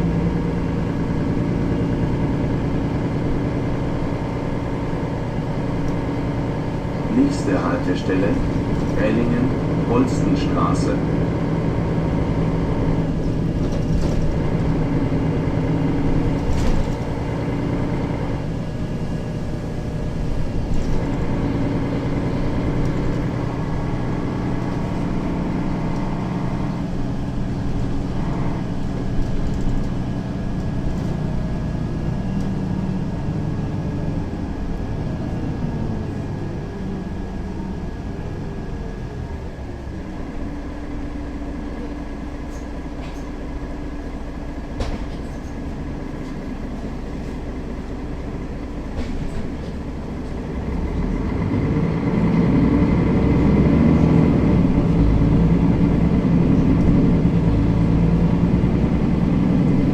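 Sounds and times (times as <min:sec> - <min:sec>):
bus engine: 0:00.0 - 0:59.9
road noise: 0:00.0 - 0:59.9.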